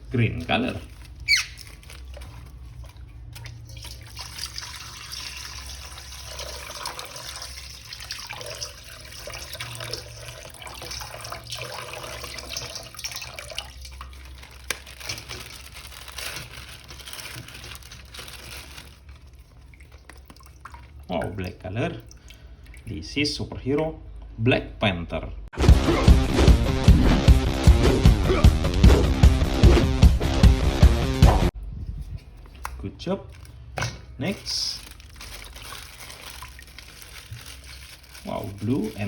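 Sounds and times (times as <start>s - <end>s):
tap water splashing in a sink: 1.6s - 15.1s, 19.5s - 22.9s.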